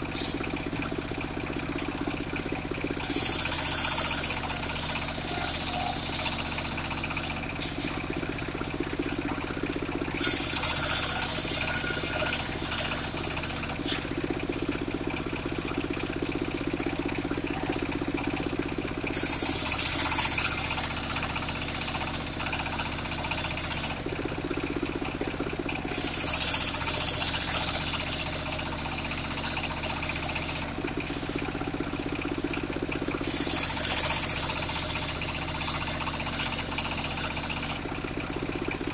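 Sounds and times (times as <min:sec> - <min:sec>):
sawmill engine hum: 0:00.0 - 0:38.9
saw rasping through wood: 0:03.0 - 0:08.0, 0:10.2 - 0:13.9, 0:19.1 - 0:24.0, 0:25.9 - 0:31.5.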